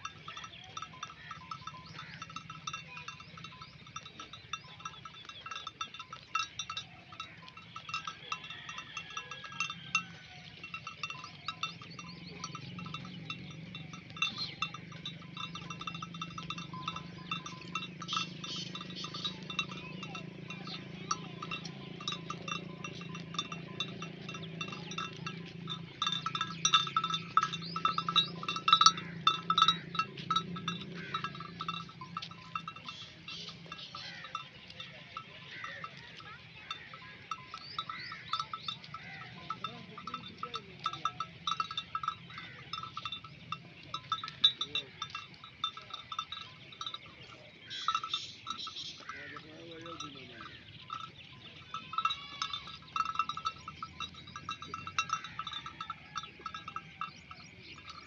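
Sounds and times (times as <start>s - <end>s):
sheep neck bells clinking: 0.0s - 58.0s
sheep bleating: 27.5s - 32.4s, 51.6s - 53.4s.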